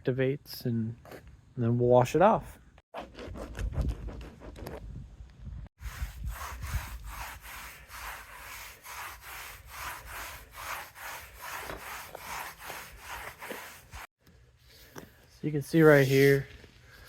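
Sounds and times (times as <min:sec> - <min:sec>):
stiff brush scrubbing concrete: 0:05.8 - 0:14.1, 0:15.8 - 0:16.5.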